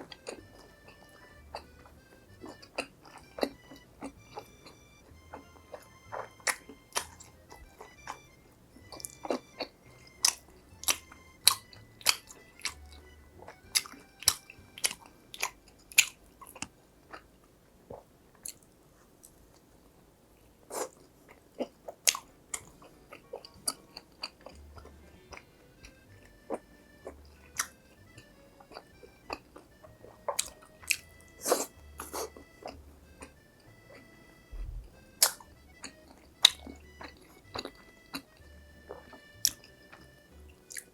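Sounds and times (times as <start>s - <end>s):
crunching and chewing crispy food: 0.0s - 40.9s.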